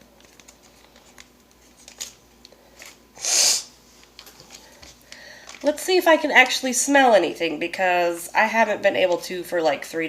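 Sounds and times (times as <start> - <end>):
foil packet crinkling: 0.0 - 3.1, 4.0 - 6.5
nose sniff or snort: 3.2 - 3.7.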